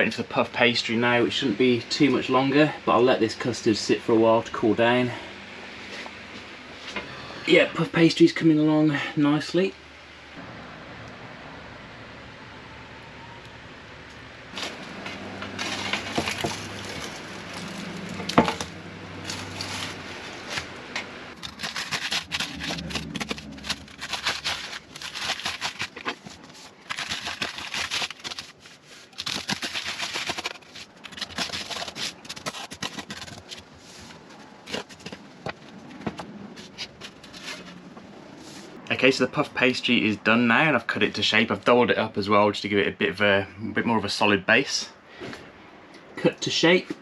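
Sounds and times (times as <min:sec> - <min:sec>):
low hum: 0:09.4 - 0:27.0
crisp pastry crackling: 0:14.6 - 0:33.7.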